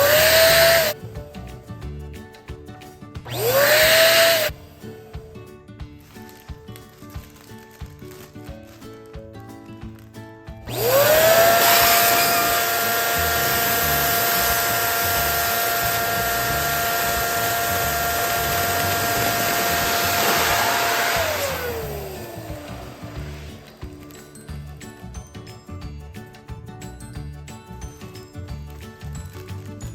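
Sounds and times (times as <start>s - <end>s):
electric balloon pump blowing air: 0.0s - 1.1s, 3.3s - 5.0s, 10.7s - 24.8s.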